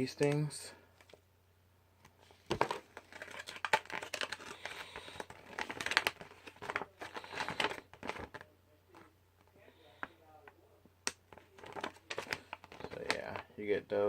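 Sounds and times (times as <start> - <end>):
packaging crinkling and rustling: 2.1 - 9.1, 11.1 - 13.5.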